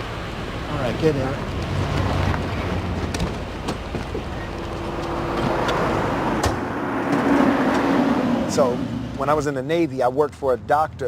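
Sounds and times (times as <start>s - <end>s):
car engine running: 0.0s - 9.5s
road traffic: 0.0s - 11.0s
sharp knocks: 3.1s - 8.0s.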